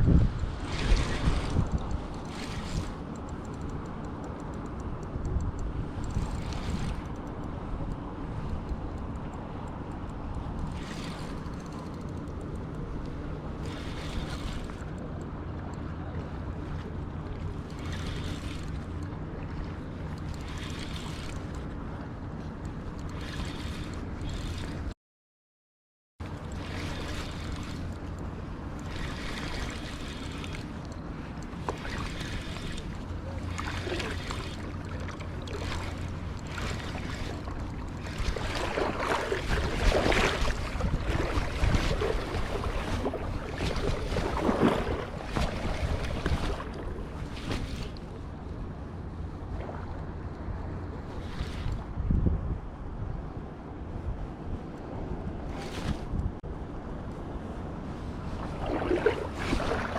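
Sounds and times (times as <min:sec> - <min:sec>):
wind on microphone: 0:00.0 - 0:03.4, 0:05.0 - 0:09.1, 0:31.7 - 0:48.7, 0:49.3 - 0:59.9
water rushing: 0:31.7 - 0:48.0, 0:58.4 - 0:59.9.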